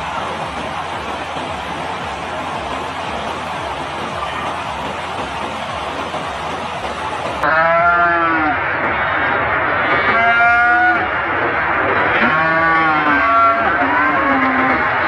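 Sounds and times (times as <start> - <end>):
steady rushing noise: 0.0 - 7.5, 8.2 - 15.0
cattle mooing: 12.2 - 14.9.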